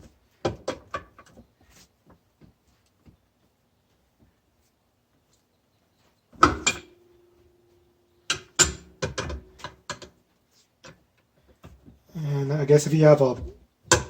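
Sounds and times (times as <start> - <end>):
metal hand tools clanking: 6.4 - 7.0.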